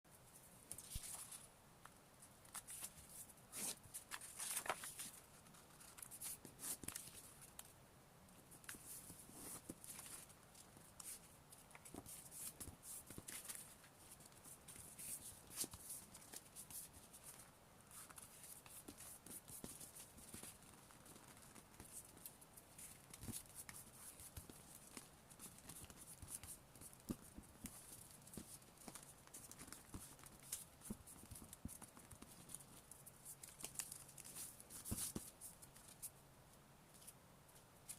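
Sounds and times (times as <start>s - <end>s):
paper being folded and creased: 0.8s - 1.4s, 2.5s - 7.6s.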